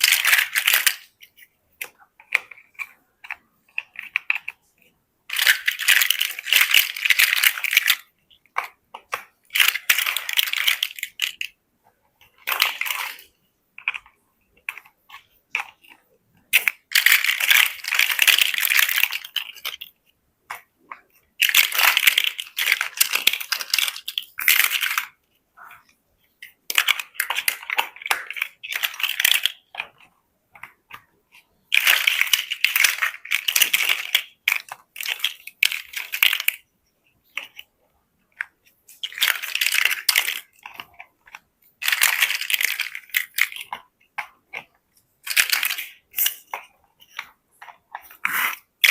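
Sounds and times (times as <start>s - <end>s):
plastic bricks rattling and clicking: 0.0s - 11.6s, 12.2s - 36.6s, 38.3s - 48.9s.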